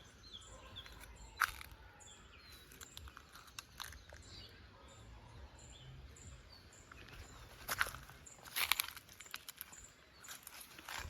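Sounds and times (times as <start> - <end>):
small clicks and rustles: 7.0 - 11.0.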